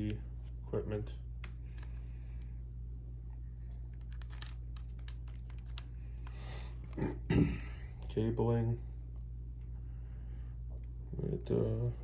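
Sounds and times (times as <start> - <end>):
steady low hum: 0.0 - 12.0
packaging clicks and rustles: 3.9 - 6.3.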